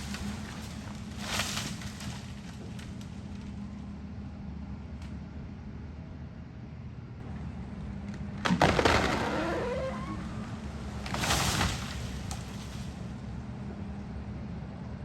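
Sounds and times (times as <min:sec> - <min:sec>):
branches snapping: 0:00.0 - 0:03.6, 0:08.0 - 0:13.1
tree cracking and crashing down: 0:00.0 - 0:03.6, 0:08.0 - 0:13.2.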